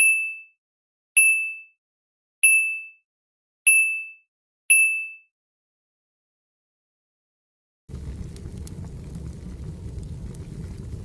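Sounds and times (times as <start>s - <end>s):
bell-like chime dinging: 1.2s - 1.8s, 2.4s - 3.0s, 3.7s - 5.3s.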